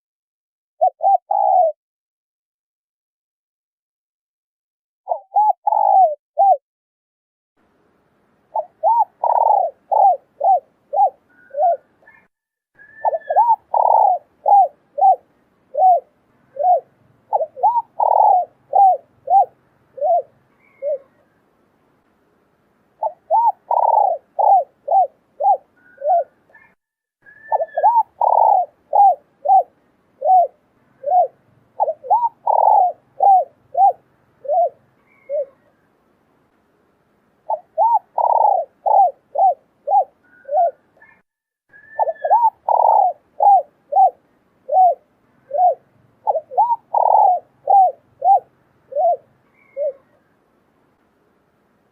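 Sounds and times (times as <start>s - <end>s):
doves cooing: 0.8s - 1.8s, 5.1s - 6.6s, 8.5s - 21.4s, 23.0s - 35.8s, 37.5s - 50.3s.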